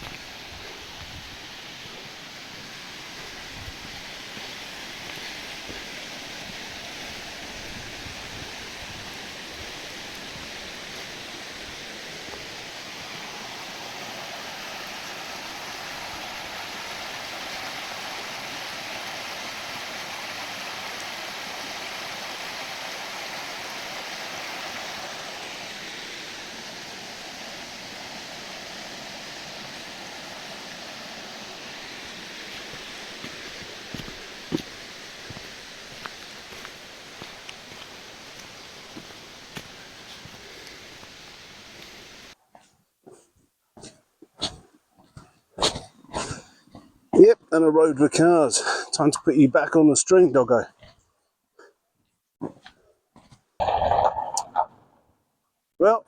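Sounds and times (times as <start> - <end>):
stream rushing over rocks: 0.0 - 42.4.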